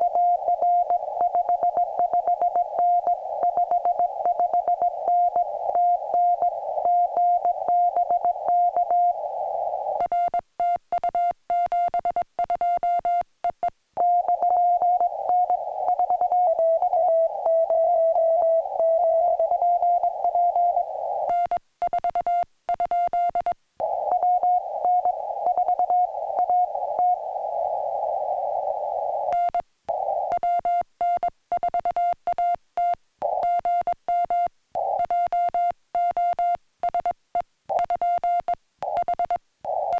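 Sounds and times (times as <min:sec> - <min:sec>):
radio receiver hiss: 0:00.0 - 0:10.1, 0:14.0 - 0:21.6, 0:23.8 - 0:30.9, 0:33.2 - 0:33.9, 0:34.8 - 0:35.6, 0:38.8 - 0:39.9
morse code tone beeping: 0:30.3 - 0:37.2, 0:37.8 - 0:39.9.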